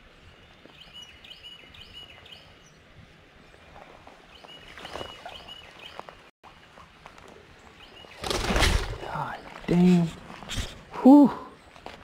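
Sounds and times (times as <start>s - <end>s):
outdoor background noise: 0.0s - 12.0s
rustles or splashes: 3.6s - 11.0s.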